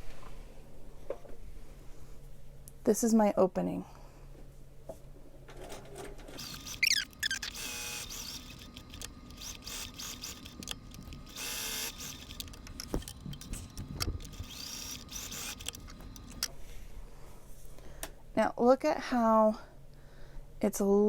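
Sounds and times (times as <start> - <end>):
sewing machine running: 6.4 - 16.5.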